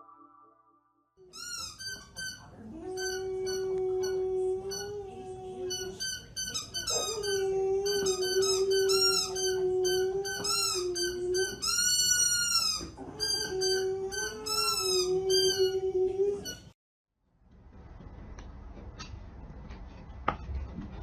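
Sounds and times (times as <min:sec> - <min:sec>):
dog howling: 0:02.6 - 0:06.0, 0:06.9 - 0:12.0, 0:13.0 - 0:16.6.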